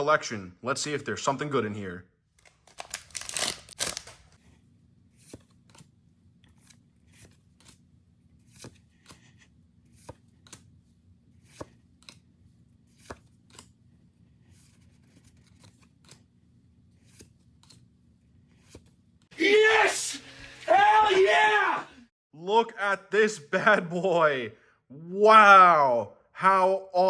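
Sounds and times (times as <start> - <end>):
cards flipping and sliding: 2.4 - 4.4, 5.2 - 10.8, 11.4 - 12.3, 12.9 - 19.1.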